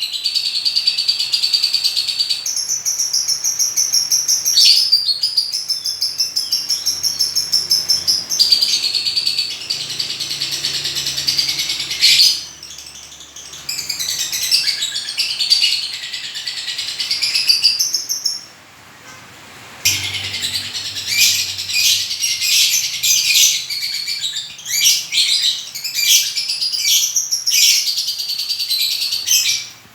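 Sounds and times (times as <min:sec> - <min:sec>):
lovebird chattering: 0:19.8 - 0:29.7.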